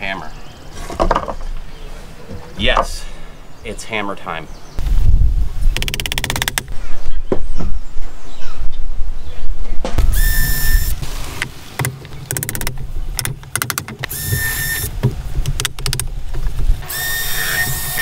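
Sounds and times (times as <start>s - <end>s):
rapid clicking: 5.8s - 6.7s
power drill motor whine: 10.1s - 11.0s, 14.1s - 14.9s, 16.8s - 18.0s.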